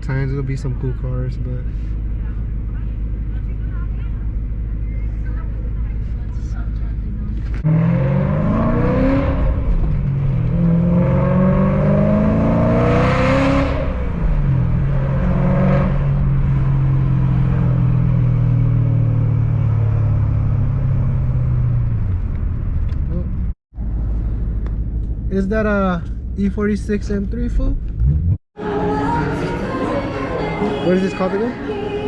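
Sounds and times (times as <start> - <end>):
car engine accelerating: 4.4 - 26.3, 27.0 - 30.6.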